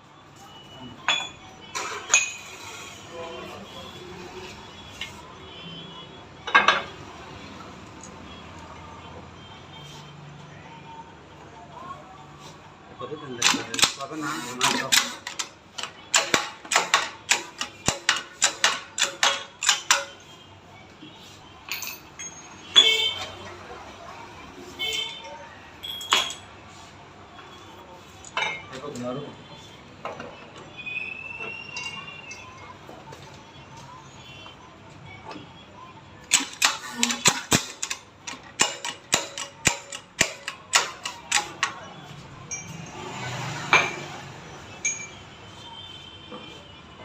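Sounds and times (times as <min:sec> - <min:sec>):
hammer tapping on metal: 0:14.9 - 0:20.2, 0:36.3 - 0:41.8.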